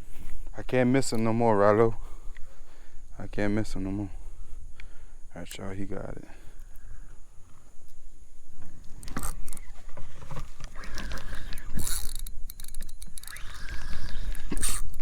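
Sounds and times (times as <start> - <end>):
fishing reel clicking and rattling: 9.0 - 15.0.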